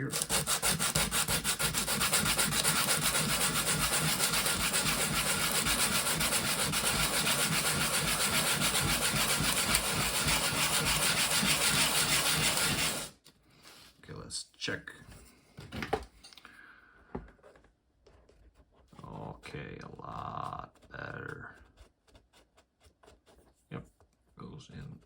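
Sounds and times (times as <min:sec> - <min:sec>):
rubbing on sandpaper: 0:00.0 - 0:13.1.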